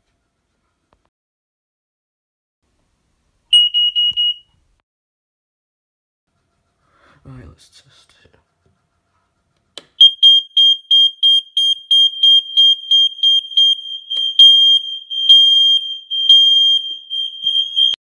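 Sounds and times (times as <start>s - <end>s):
smoke alarm beeping: 3.5s - 4.6s, 10.0s - 18.0s.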